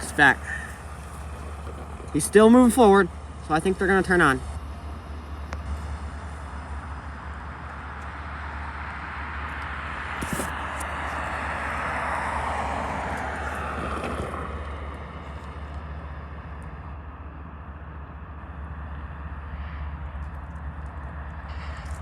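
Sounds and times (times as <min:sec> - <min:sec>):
steady low rumble: 0:00.0 - 0:22.0
vehicle passing close by: 0:05.7 - 0:16.4.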